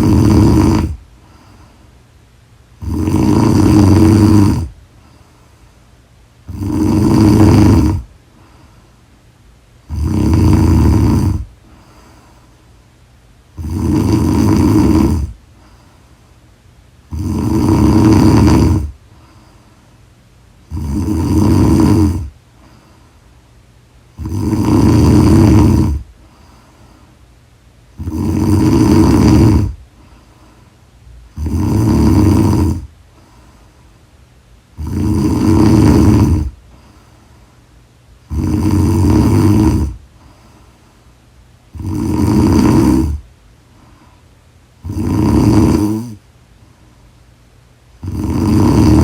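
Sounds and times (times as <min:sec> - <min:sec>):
loud snoring: 0:00.0 - 0:01.0, 0:02.8 - 0:04.8, 0:06.4 - 0:08.1, 0:09.8 - 0:12.0, 0:13.5 - 0:15.4, 0:17.1 - 0:19.0, 0:20.6 - 0:22.4, 0:24.1 - 0:26.5, 0:27.9 - 0:29.8, 0:31.3 - 0:32.9, 0:34.8 - 0:36.6, 0:38.2 - 0:40.1, 0:41.7 - 0:43.3, 0:44.8 - 0:46.2, 0:48.0 - 0:49.0
quiet breathing: 0:00.0 - 0:49.0.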